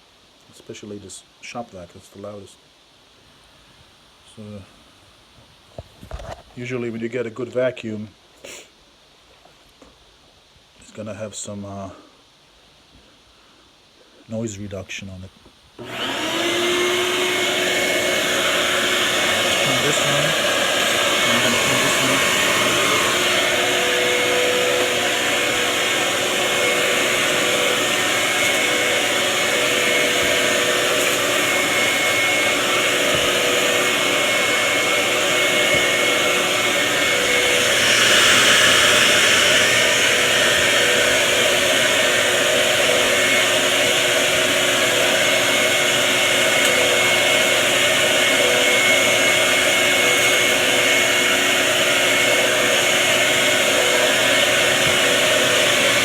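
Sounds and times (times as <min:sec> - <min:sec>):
vacuum cleaners running: 0:15.8 - 0:56.0.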